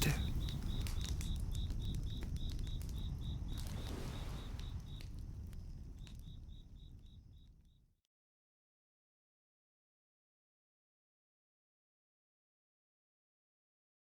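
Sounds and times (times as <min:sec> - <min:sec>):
campfire crackling and popping: 0:00.0 - 0:07.8
crickets chirping: 0:00.0 - 0:07.8.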